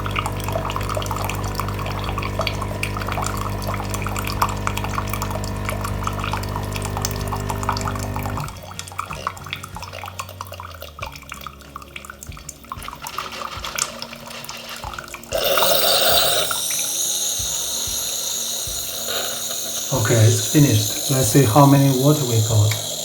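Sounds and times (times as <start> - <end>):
coffee machine hissing rush: 0.0 - 8.6, 13.0 - 23.0
liquid dripping into cup: 0.0 - 23.0.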